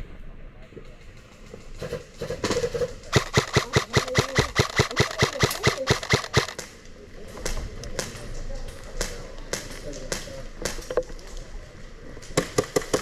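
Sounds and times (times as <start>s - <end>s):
airsoft gun shots: 1.8s - 6.6s.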